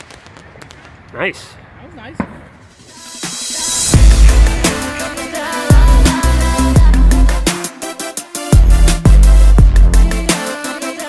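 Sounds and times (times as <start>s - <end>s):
electronic music with deep bass: 3.9s - 7.5s, 8.6s - 10.3s.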